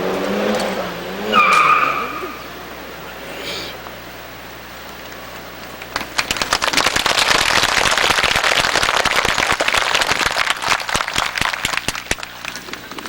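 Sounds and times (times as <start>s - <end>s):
audience applauding: 5.8s - 13.0s.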